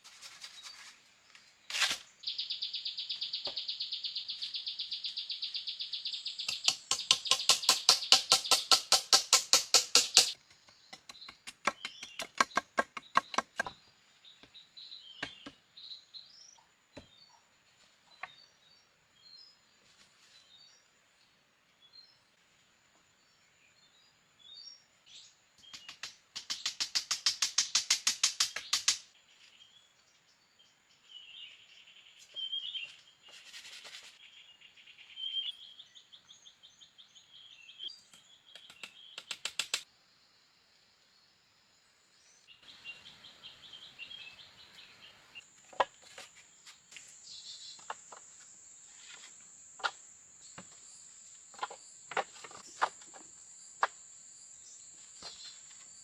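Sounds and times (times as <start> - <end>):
sharp knocks and cracks: 6.5 - 13.8, 25.7 - 29.1.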